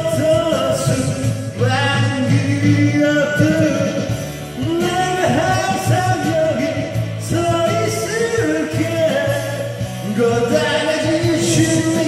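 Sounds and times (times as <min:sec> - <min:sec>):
band backing track: 0:00.0 - 0:12.0
man singing rock ballad: 0:00.0 - 0:12.0.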